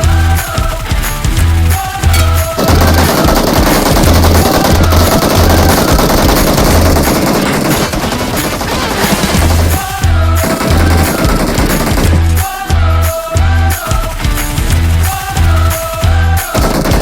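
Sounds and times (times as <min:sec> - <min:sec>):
rapid automatic gunfire: 0:00.0 - 0:12.5, 0:14.6 - 0:17.0
music with heavy bass beat: 0:00.0 - 0:17.0.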